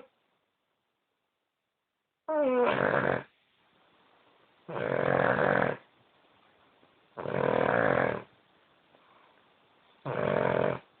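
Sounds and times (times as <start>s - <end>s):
dog snoring: 2.3s - 3.3s, 4.7s - 5.9s, 7.2s - 8.3s, 10.0s - 11.0s.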